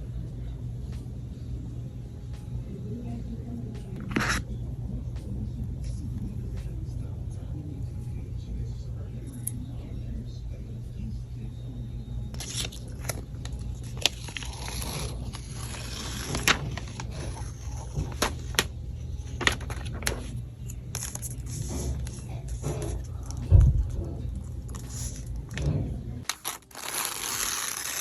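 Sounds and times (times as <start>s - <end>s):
steady low hum: 0.0s - 28.0s
packaging crinkling and tearing: 12.4s - 17.1s, 26.2s - 28.0s.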